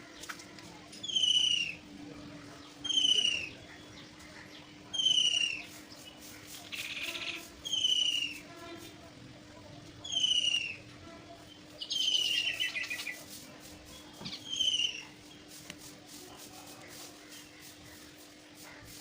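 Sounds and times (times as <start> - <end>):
faint bird chirps: 1.0 - 1.8, 2.6 - 8.9, 10.0 - 13.3, 13.9 - 15.6
birds whistling falling notes: 7.6 - 8.4, 10.1 - 10.8, 14.2 - 15.1.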